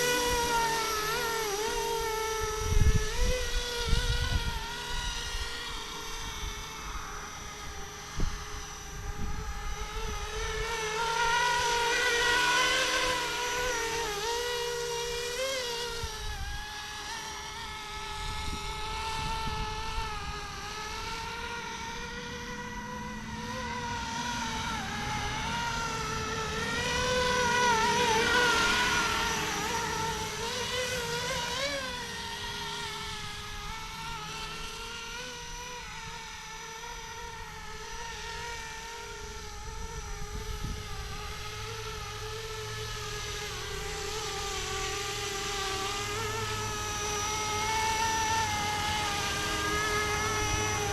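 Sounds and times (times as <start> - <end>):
rc helicopter motor whine: 0.0 - 50.9.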